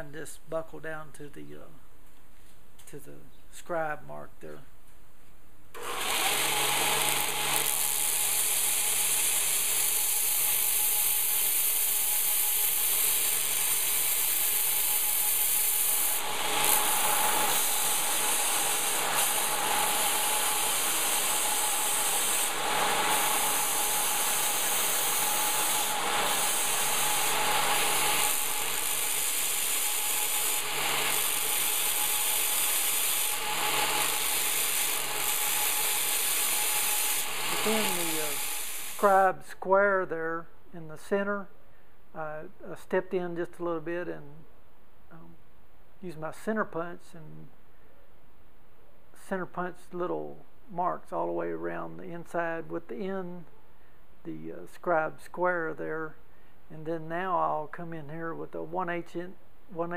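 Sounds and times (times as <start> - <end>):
belt sander grinding steel: 5.8 - 39.1.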